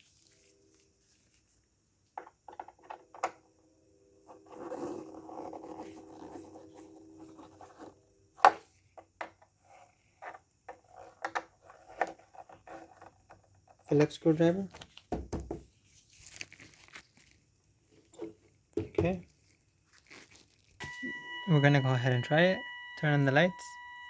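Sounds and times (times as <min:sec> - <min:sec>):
plastic rubbing and scraping: 0:09.3 - 0:15.0.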